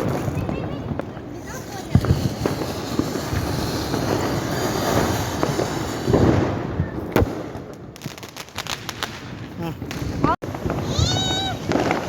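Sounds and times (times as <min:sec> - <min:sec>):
firecracker bang: 0:00.0 - 0:12.0
firecrackers crackling: 0:00.0 - 0:12.0
scattered firecracker pops: 0:07.0 - 0:09.1.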